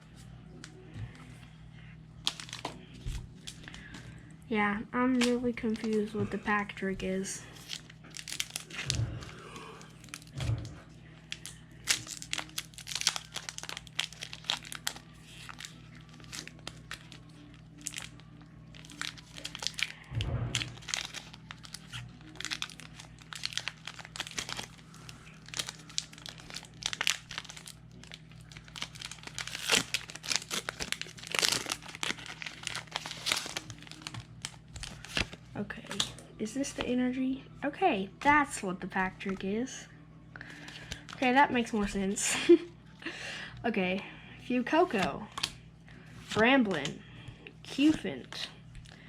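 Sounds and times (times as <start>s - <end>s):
foil wrapper crinkling: 2.2s - 4.1s, 5.1s - 6.1s, 7.4s - 10.4s, 11.2s - 36.2s, 40.5s - 41.4s
low thumps: 20.1s - 20.8s.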